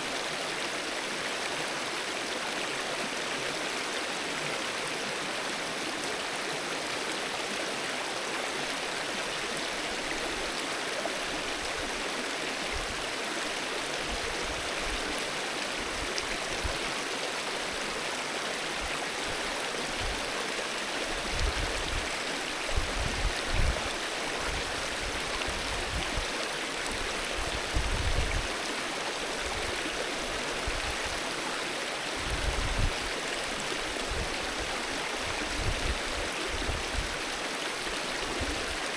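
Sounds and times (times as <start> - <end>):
river rushing over its bed: 0.0 - 38.9.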